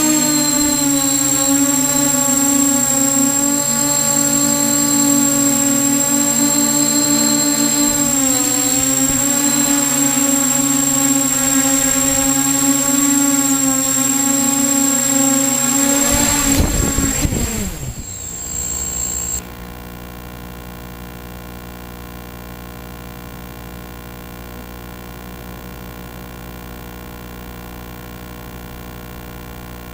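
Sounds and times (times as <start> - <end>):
electric motors and propellers spinning: 0.0 - 19.5
electrical hum: 0.0 - 20.6.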